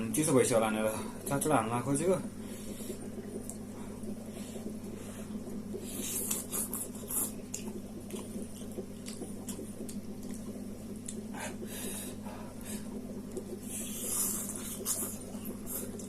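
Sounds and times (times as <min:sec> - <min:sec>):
chewing and slurping noodles: 0:05.4 - 0:12.2, 0:13.3 - 0:16.0
wet mouth clicks and smacks: 0:06.0 - 0:11.2.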